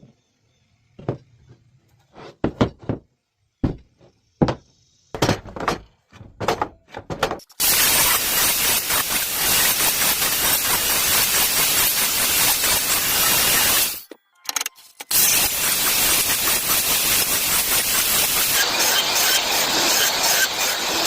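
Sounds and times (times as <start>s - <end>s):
wooden boards knocking: 2.4s - 4.6s, 5.2s - 7.4s
circular saw running: 7.6s - 14.1s, 15.1s - 21.0s.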